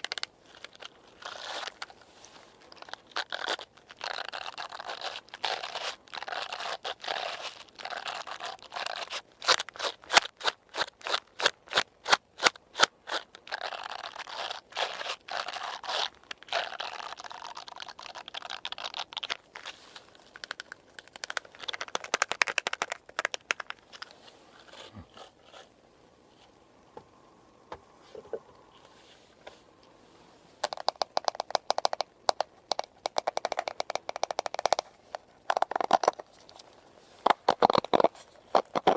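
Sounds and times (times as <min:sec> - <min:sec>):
brush scraping through hair: 0:24.0 - 0:25.7.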